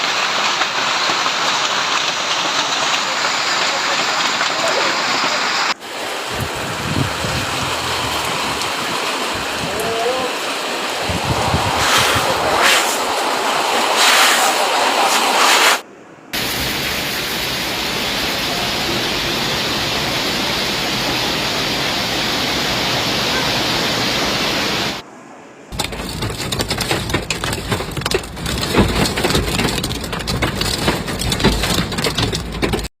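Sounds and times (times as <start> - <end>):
hailstones clattering on hard surface: 0.0 - 5.6, 11.1 - 15.8, 25.7 - 32.9
heavy rain and hail hissing: 0.0 - 25.0, 25.7 - 32.9.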